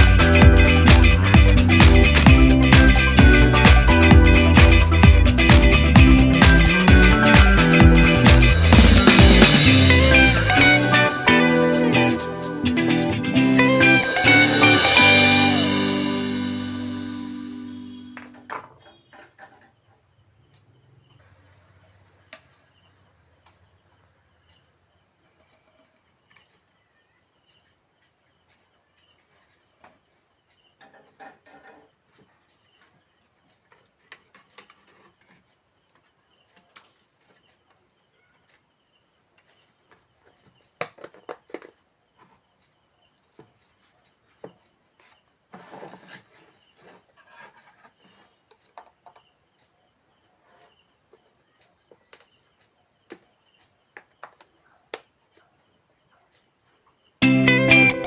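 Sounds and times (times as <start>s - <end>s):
faint high chirring: 14.1s - 19.0s.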